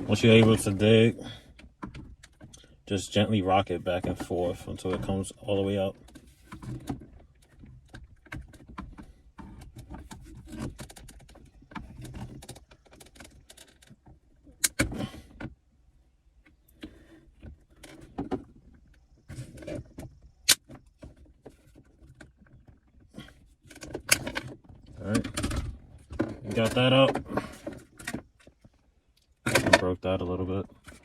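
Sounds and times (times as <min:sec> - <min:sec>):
plastic trim clicking and creaking: 0:19.4 - 0:31.0.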